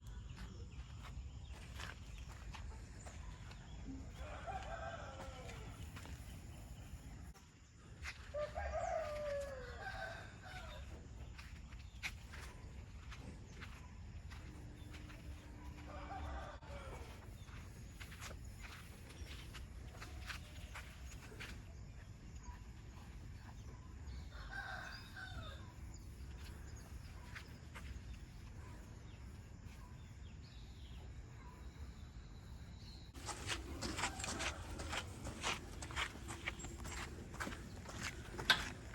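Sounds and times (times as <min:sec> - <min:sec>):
rooster crowing: 0:04.1 - 0:05.9, 0:08.3 - 0:10.9, 0:15.7 - 0:17.2, 0:24.3 - 0:25.6, 0:33.2 - 0:38.4.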